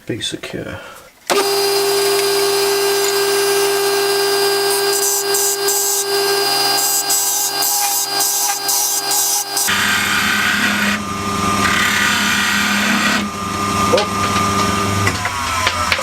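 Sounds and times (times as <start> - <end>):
tool cutting wood hissing: 1.3 - 13.4
wood lathe motor humming: 1.3 - 16.0.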